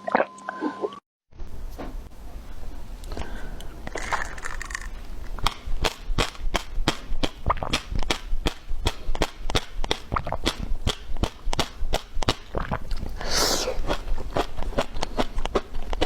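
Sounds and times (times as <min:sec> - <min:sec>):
person gulping a drink: 0:00.0 - 0:00.7, 0:03.1 - 0:05.5, 0:07.2 - 0:08.1, 0:09.5 - 0:11.6, 0:12.2 - 0:16.0.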